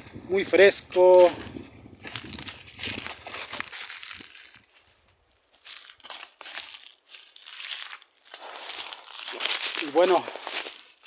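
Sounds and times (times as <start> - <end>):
footsteps crunching dry leaves: 0.4 - 11.0.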